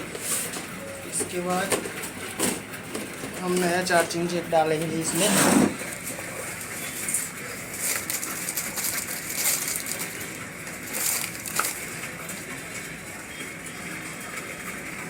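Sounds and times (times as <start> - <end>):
packet rustling and crinkling: 7.0 - 12.3.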